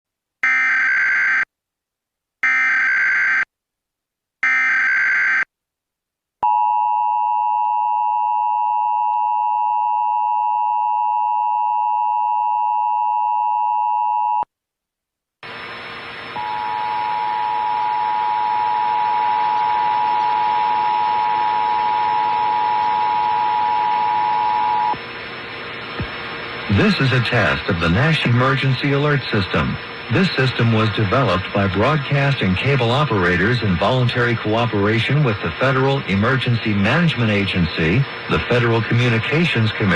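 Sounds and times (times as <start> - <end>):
single steady tone: 16.3 - 25.0
steady hiss: 25.0 - 39.9
warbling data bursts: 26.4 - 39.9.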